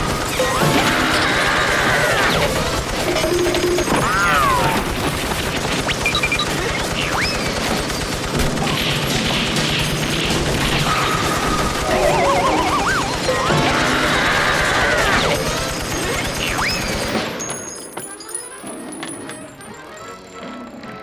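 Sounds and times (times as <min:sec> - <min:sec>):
cartoon crashing and banging: 0:11.4 - 0:16.1
whistle-like pitch glides: 0:11.8 - 0:14.2
warbling pitch: 0:11.8 - 0:14.4.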